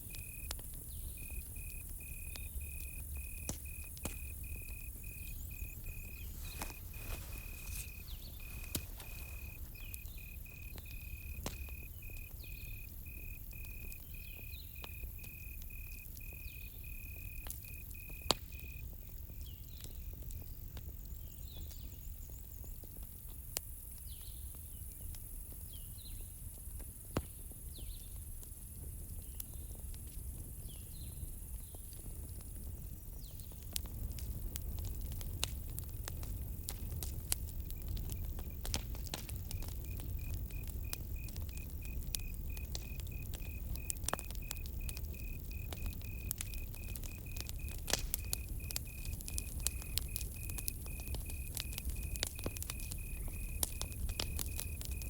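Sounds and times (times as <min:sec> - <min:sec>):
crickets chirping: 0:00.0 - 0:19.6, 0:33.9 - 0:55.0
campfire crackling and popping: 0:00.0 - 0:55.0
low rumble of fire: 0:00.0 - 0:55.0
faint bird chirps: 0:04.4 - 0:14.8.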